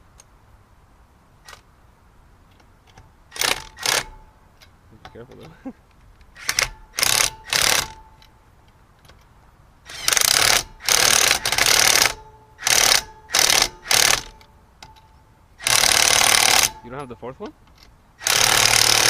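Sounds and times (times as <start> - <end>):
impact wrench bursts: 3.3 - 4.2, 6.4 - 8.1, 9.9 - 14.5, 15.6 - 16.9, 18.2 - 19.0.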